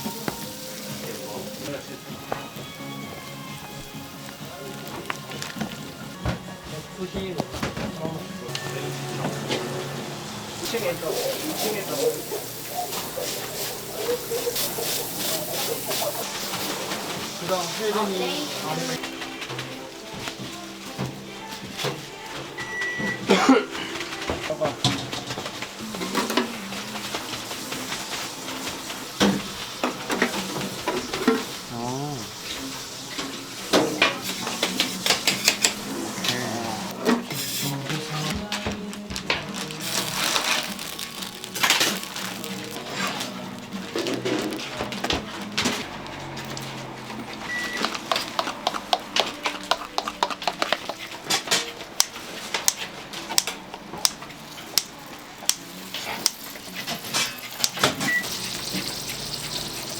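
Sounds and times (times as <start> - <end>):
food sizzling: 0.0 - 7.4, 8.0 - 59.9
utensils knocking on metal: 33.7 - 35.9, 47.4 - 54.2.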